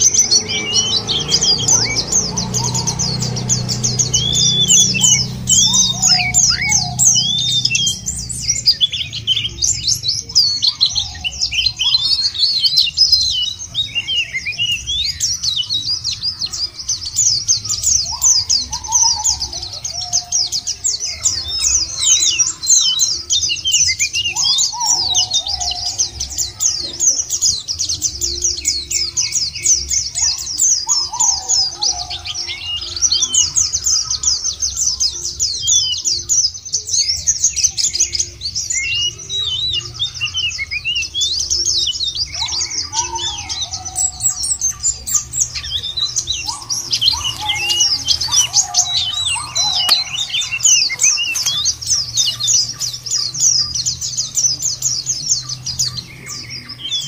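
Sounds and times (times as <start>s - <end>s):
bird chirps and trills: 0.0s - 57.0s
lower falling bird call: 40.6s - 57.0s.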